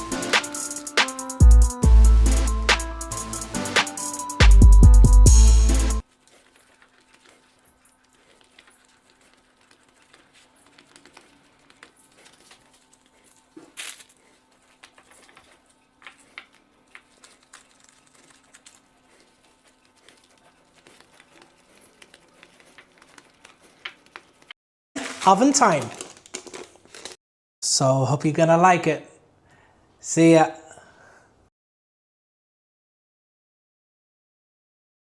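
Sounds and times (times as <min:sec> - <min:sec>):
loud music with drum beat: 0:00.0 - 0:06.0
hands handling food: 0:06.0 - 0:27.2.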